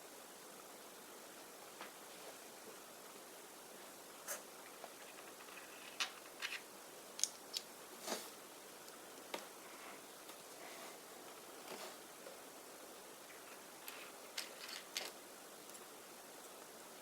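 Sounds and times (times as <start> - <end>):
faint steady hiss: 0.0 - 17.0
plastic toy parts clicking: 13.9 - 15.2.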